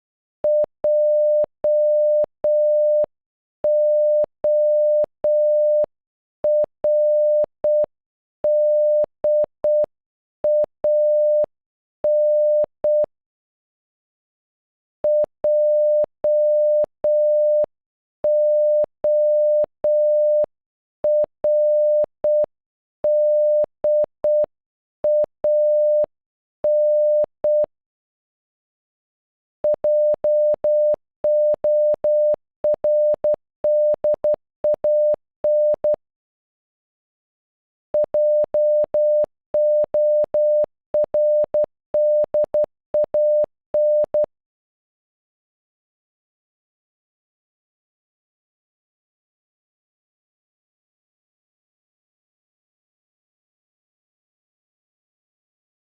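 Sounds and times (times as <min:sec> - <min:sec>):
morse code beeps: 0:00.4 - 0:03.1, 0:03.7 - 0:05.9, 0:06.5 - 0:07.9, 0:08.5 - 0:09.9, 0:10.5 - 0:11.5, 0:12.1 - 0:13.1, 0:15.1 - 0:17.7, 0:18.3 - 0:20.5, 0:21.1 - 0:22.5, 0:23.1 - 0:24.5, 0:25.1 - 0:26.1, 0:26.7 - 0:27.7, 0:29.6 - 0:36.0, 0:38.0 - 0:44.3.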